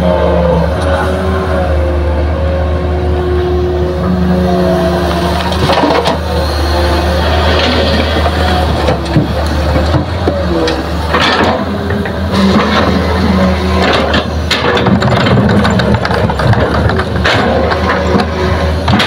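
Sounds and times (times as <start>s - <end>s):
heavy diesel engine running: 0.0s - 19.0s
machinery knocks and rattles: 7.5s - 19.0s.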